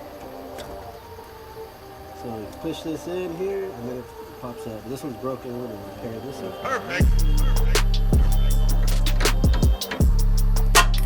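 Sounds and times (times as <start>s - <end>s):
background music with beat and bass: 4.6s - 11.0s.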